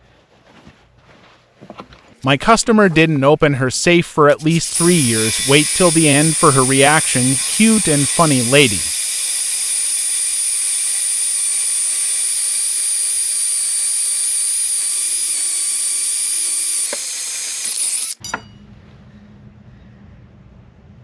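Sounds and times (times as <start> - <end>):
electric drill whining: 4.3 - 18.2.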